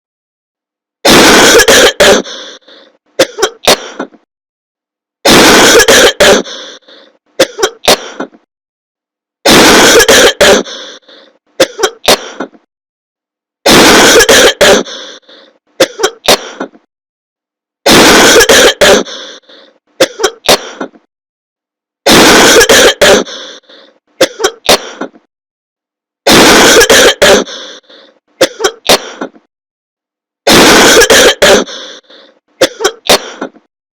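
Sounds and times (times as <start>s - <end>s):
loud clipped coughing: 1.1s - 4.3s, 5.3s - 8.5s, 9.5s - 12.7s, 13.7s - 16.9s, 17.9s - 21.1s, 22.1s - 25.3s, 26.3s - 29.5s, 30.5s - 33.7s.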